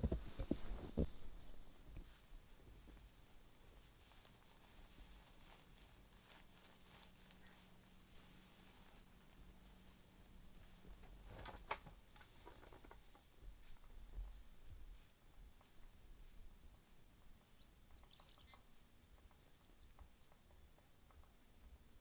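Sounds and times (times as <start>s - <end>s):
high-pitched bird chirps: 16.4s - 19.2s.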